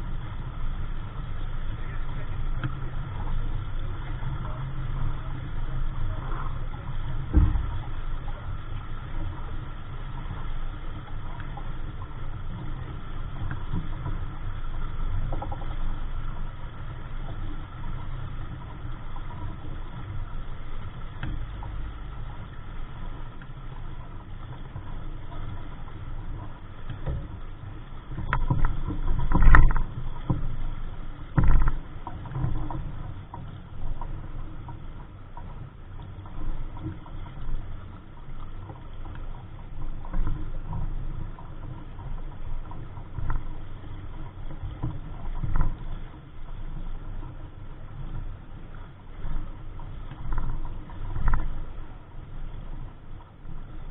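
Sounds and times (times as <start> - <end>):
water noise: 0.0 - 53.9
wind rumbling on microphone: 0.0 - 53.9
knocks and thumps: 7.3 - 7.7.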